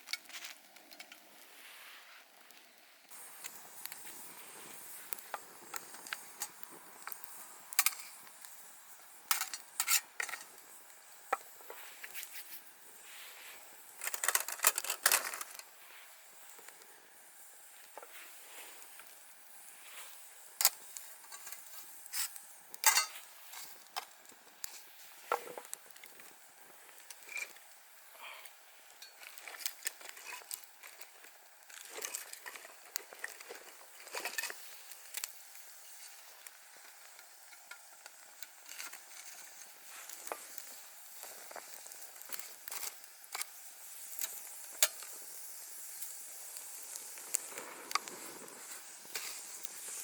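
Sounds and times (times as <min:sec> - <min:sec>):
faint steady hiss: 0:00.0 - 0:50.0
metal cookware clinking: 0:22.9 - 0:23.2.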